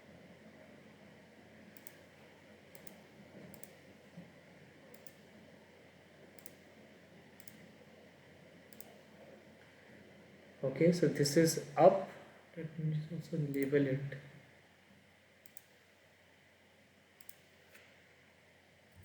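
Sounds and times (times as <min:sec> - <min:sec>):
low room hiss: 0:00.0 - 0:19.0
faint computer mouse clicks: 0:01.7 - 0:02.1, 0:02.7 - 0:03.8, 0:04.9 - 0:05.3, 0:06.4 - 0:06.7, 0:07.4 - 0:07.7, 0:08.7 - 0:09.0, 0:15.4 - 0:15.8, 0:17.2 - 0:18.0.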